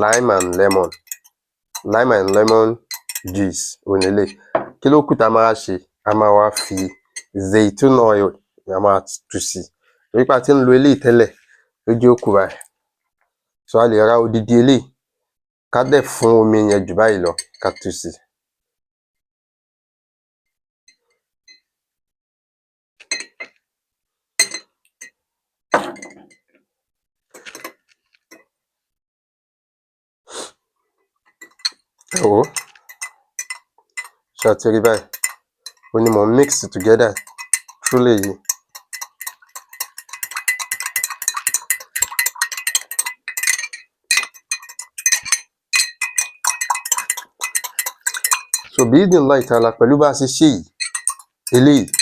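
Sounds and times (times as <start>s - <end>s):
glass bottles clinking: 0.0s - 4.8s, 6.4s - 7.4s, 23.1s - 23.6s, 24.4s - 24.8s, 25.7s - 26.5s, 31.3s - 49.8s, 50.7s - 52.0s.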